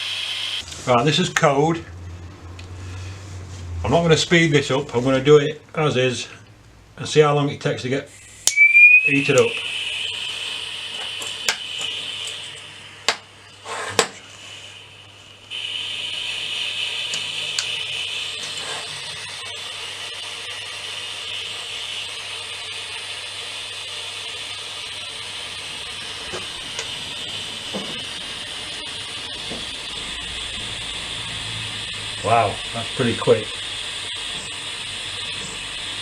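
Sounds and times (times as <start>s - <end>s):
gas soldering iron hissing: 8.0s - 36.0s.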